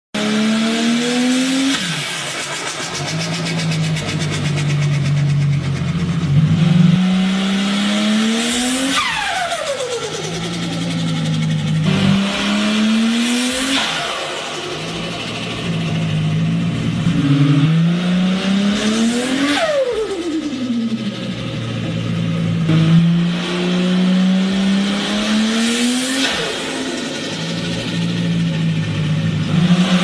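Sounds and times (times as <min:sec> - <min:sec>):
car engine accelerating: 0:00.2 - 0:30.0
turbo flutter: 0:01.9 - 0:06.9.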